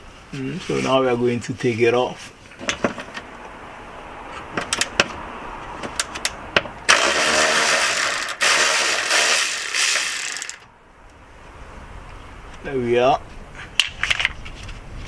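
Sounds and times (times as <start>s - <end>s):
ratchet wrench ratcheting: 6.0s - 10.7s.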